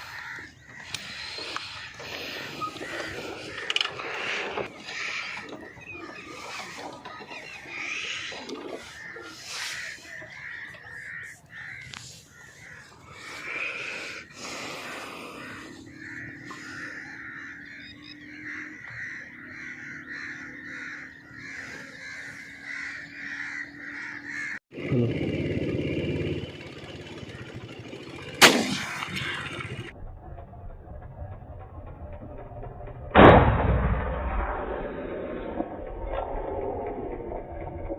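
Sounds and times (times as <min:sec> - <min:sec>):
cawing calls: 0:00.0 - 0:24.6
birds calling: 0:00.0 - 0:29.9
low rumble: 0:27.6 - 0:37.9
shotgun shot: 0:28.4 - 0:29.2, 0:33.2 - 0:34.6.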